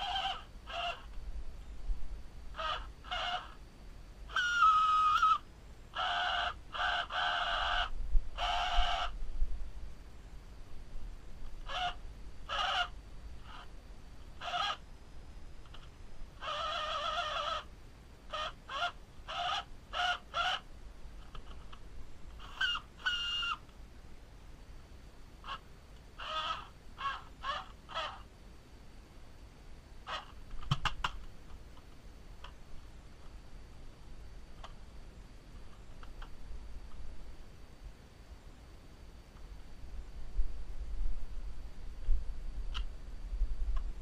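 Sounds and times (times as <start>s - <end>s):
toy car motor whirring: 0.0s - 1.1s, 2.6s - 3.6s, 4.3s - 5.4s, 6.0s - 9.2s, 11.6s - 13.7s, 14.4s - 14.8s, 15.7s - 17.7s, 18.3s - 20.6s, 22.4s - 23.6s, 26.2s - 28.2s.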